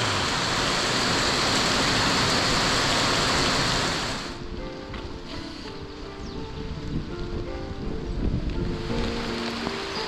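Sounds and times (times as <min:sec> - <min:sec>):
rain hissing: 0:00.0 - 0:10.0
background music of held notes: 0:04.4 - 0:10.0.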